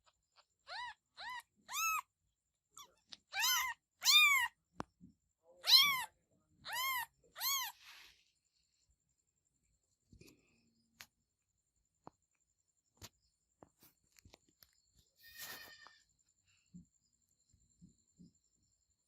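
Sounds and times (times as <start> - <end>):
kitten meowing: 0.6 - 2.1, 2.8 - 4.6, 5.6 - 7.8.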